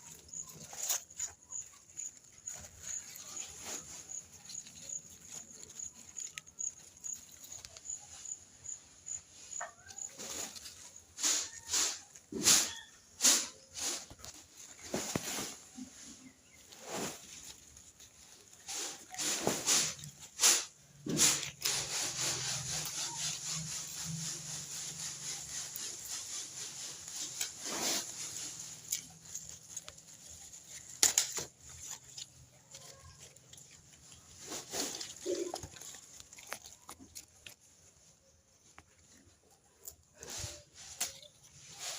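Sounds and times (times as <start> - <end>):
corn plants rustling: 0.0 - 41.9
corn stalks snapping: 27.2 - 32.8.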